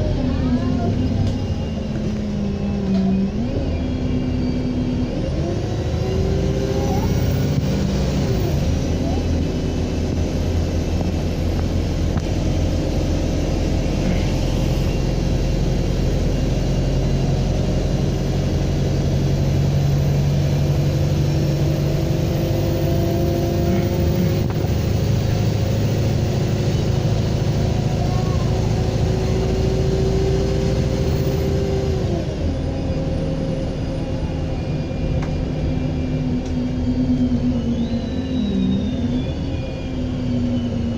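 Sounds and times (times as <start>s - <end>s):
bus diesel engine pulling: 0.0s - 40.9s
turbocharger whistle: 36.9s - 40.9s.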